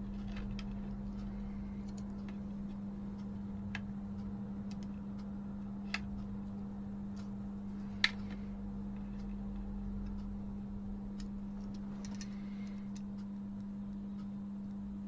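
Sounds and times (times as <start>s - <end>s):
steady low hum: 0.0s - 15.0s
clicks and taps of small parts: 4.6s - 6.6s, 11.1s - 13.7s.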